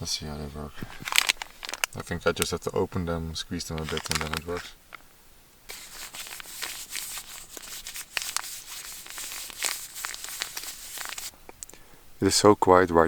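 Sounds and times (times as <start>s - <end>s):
plastic wrapper crinkling: 0.8s - 2.6s, 3.7s - 4.7s, 5.7s - 11.3s.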